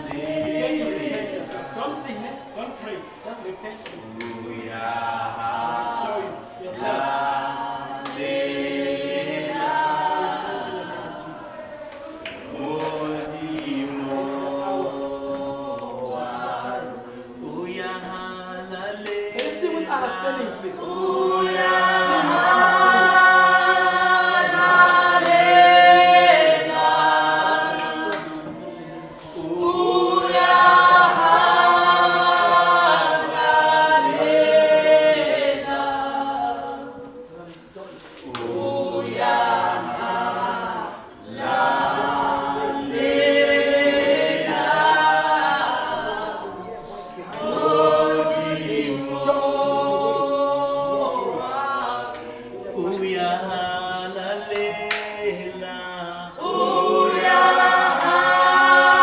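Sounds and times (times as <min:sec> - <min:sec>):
congregation singing a worship song: 0:00.0 - 0:59.0.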